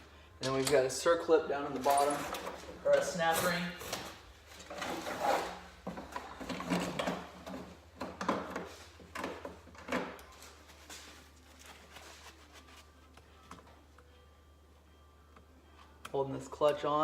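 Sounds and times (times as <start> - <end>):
metal parts clinking and scraping: 1.7 - 3.6.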